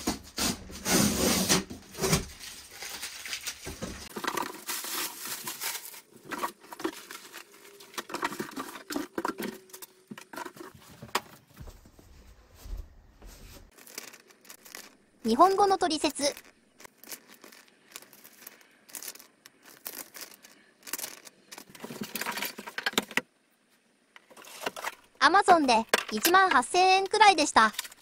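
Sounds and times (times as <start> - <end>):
packaging rustling and crinkling: 0.1 - 11.1, 13.7 - 15.0, 16.3 - 23.1.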